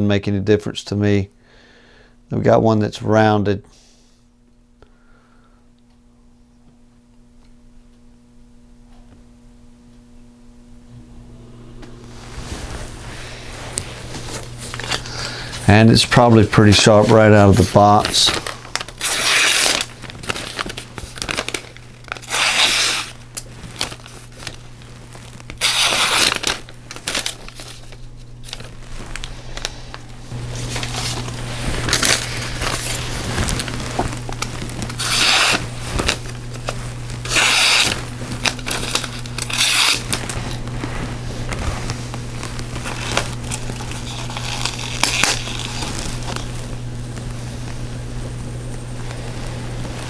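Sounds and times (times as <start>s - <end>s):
steady low hum: 0.0s - 50.0s
paper crinkling and tearing: 12.1s - 50.0s.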